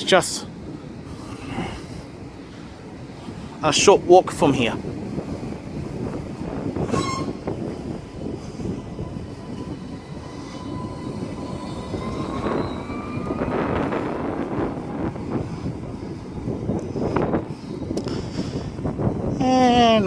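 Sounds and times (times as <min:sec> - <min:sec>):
tram rumbling along track: 0:00.0 - 0:20.0
thin whine: 0:05.2 - 0:18.1.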